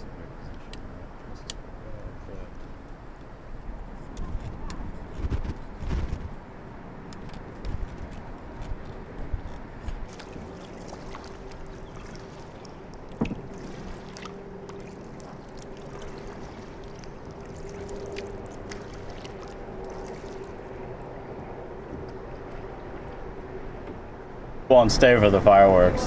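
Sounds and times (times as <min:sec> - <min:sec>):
steady low hum: 0:00.0 - 0:26.0
paddle splashes and drips: 0:08.0 - 0:24.2.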